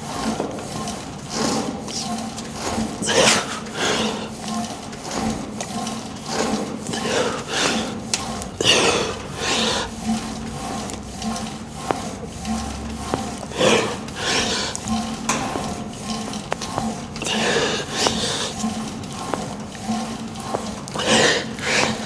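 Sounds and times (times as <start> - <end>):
heavy forceful breathing: 1.4 - 4.5, 6.3 - 22.0.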